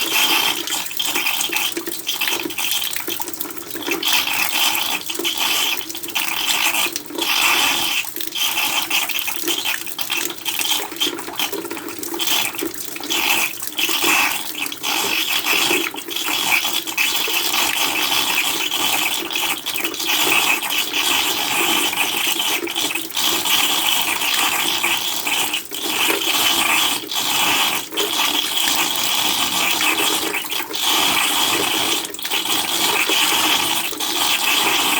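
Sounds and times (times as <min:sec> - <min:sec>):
rainwater splashing into plastic container: 0:00.0 - 0:34.9.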